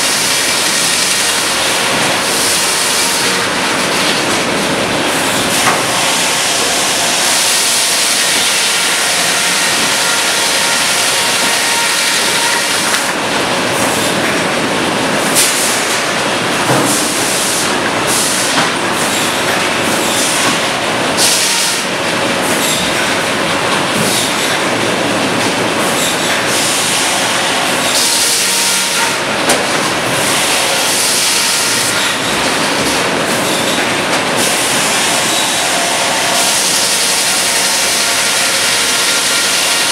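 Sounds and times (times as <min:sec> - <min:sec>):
sawmill machinery clatter and squeal: 0:00.0 - 0:14.5, 0:17.0 - 0:24.8, 0:25.6 - 0:39.9.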